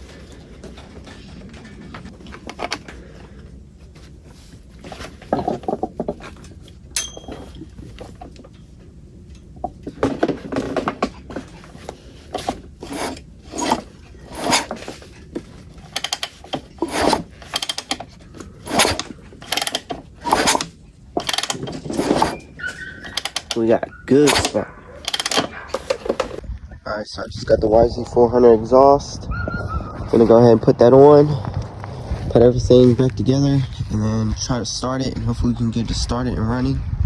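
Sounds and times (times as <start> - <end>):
engine kickstarter ratcheting: 12.3 - 15.1, 15.8 - 26.4.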